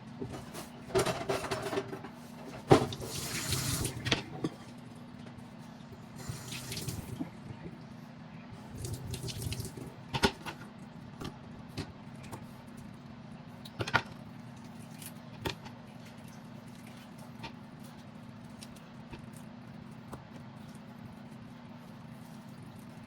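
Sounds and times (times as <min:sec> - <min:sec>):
steady low hum: 0:00.0 - 0:23.0
kitchen things clinking and knocking: 0:00.4 - 0:02.0.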